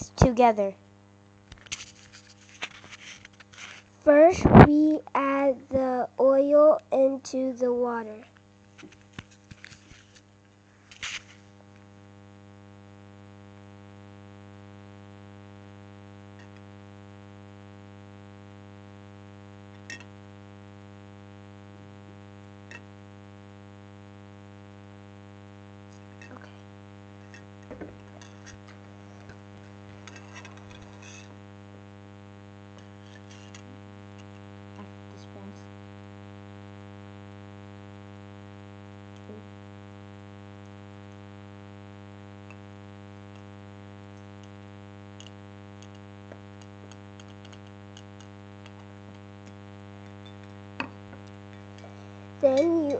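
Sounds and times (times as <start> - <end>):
electrical mains hum: 0.0 - 52.9
faint clicks and taps: 45.2 - 52.0.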